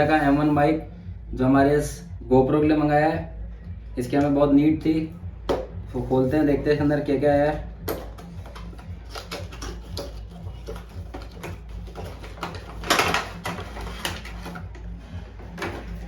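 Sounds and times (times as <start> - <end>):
steady low hum: 0.0 - 16.0
packaging rustling: 8.2 - 16.0.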